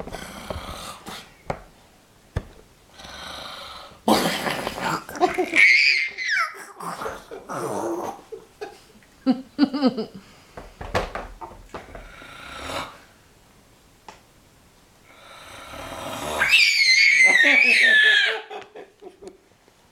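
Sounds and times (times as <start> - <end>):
man fake snoring: 12.1 - 13.0, 15.1 - 16.5.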